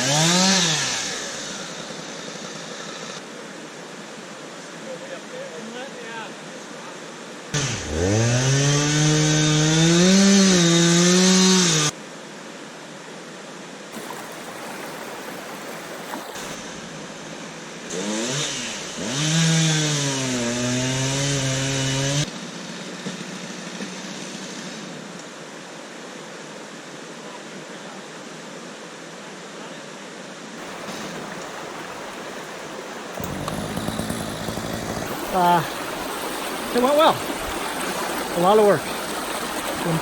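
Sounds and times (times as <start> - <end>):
chainsaw cutting: 0.0 - 1.9, 7.6 - 11.9, 14.0 - 22.3, 30.6 - 40.0
river water rushing: 13.9 - 18.0, 30.6 - 40.0.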